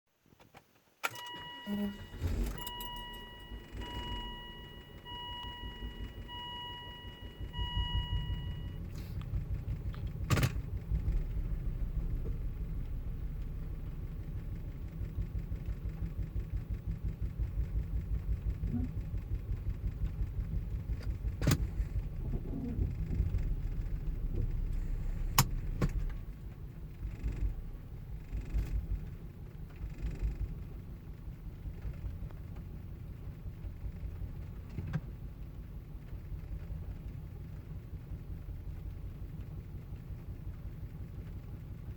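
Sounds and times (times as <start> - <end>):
dashboard chime beeping: 1.1 - 8.8
car engine idling roughly: 1.8 - 41.9.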